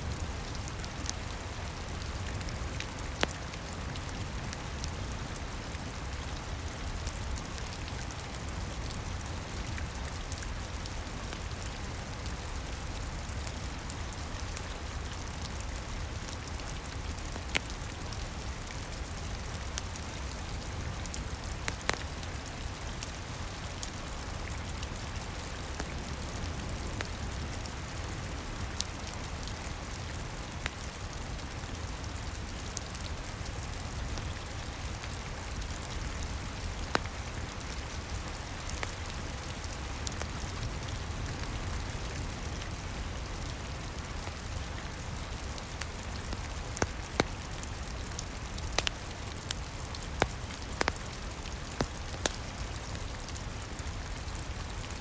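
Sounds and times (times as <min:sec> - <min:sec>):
steady rain falling: 0:00.0 - 0:55.0
wood fire popping: 0:48.6 - 0:52.4.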